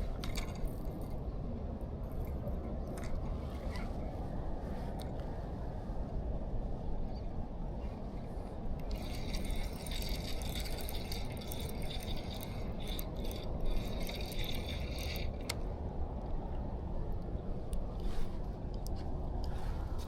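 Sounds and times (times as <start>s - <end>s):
steady low rumble: 0.0s - 20.0s
fishing reel whirring: 8.8s - 15.6s.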